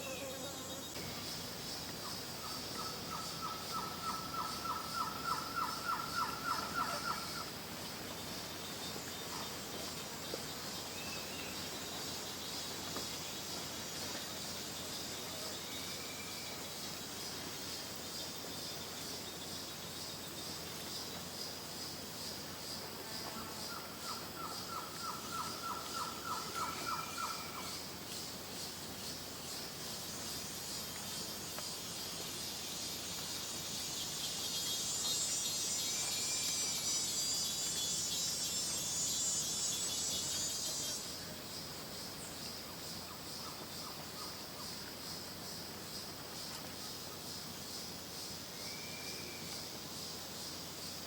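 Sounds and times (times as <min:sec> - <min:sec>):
loud high insect buzz: 0:00.0 - 0:01.9, 0:21.9 - 0:41.2
high insect chirring: 0:00.0 - 0:08.5, 0:18.1 - 0:43.9.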